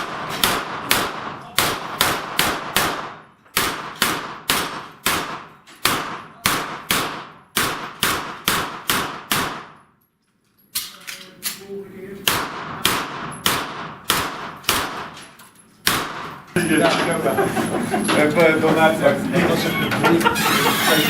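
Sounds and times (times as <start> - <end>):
semi-automatic gunfire: 0.0 - 9.9, 12.3 - 15.2, 15.8 - 16.5.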